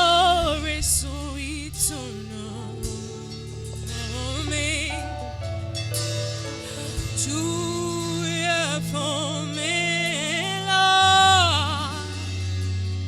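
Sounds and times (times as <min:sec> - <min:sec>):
person singing with vibrato: 0:00.0 - 0:05.8, 0:06.5 - 0:13.0
keyboard and bass accompaniment: 0:00.0 - 0:13.0.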